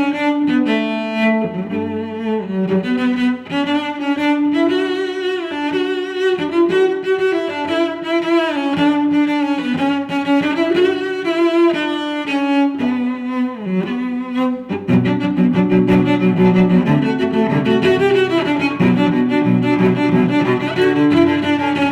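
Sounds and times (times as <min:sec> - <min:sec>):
solo bowed string melody: 0:00.0 - 0:21.9.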